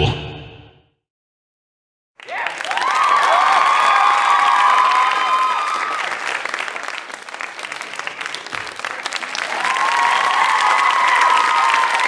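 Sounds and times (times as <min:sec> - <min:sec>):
high cheering voices: 0:02.2 - 0:06.3, 0:09.4 - 0:12.0
crowd clapping: 0:02.2 - 0:12.0.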